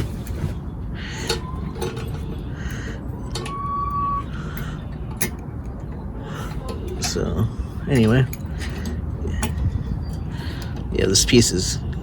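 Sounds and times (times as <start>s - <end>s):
low background rumble: 0.0s - 12.0s
whistle-like tone: 3.3s - 4.4s.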